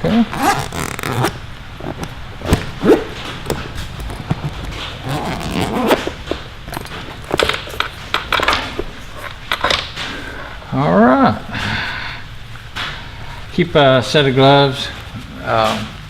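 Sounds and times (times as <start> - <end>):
tools knocking and clicking: 3.4 - 10.1.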